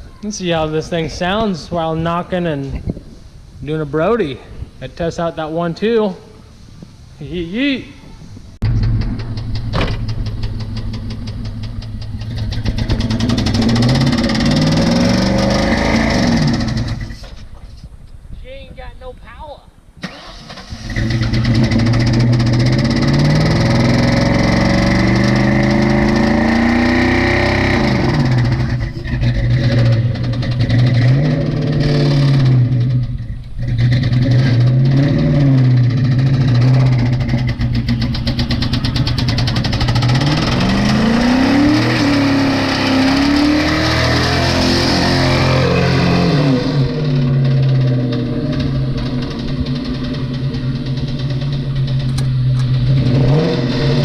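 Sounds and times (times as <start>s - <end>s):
car engine revving hard: 12.3s - 17.1s, 20.1s - 33.0s, 33.6s - 51.5s, 52.7s - 54.0s.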